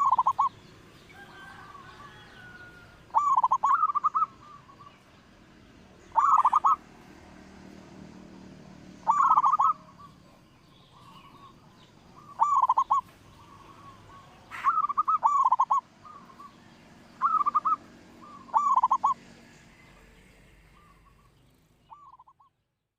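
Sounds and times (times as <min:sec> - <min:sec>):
dove cooing: 0:00.0 - 0:05.0, 0:06.0 - 0:06.8, 0:09.0 - 0:19.4, 0:20.8 - 0:22.5.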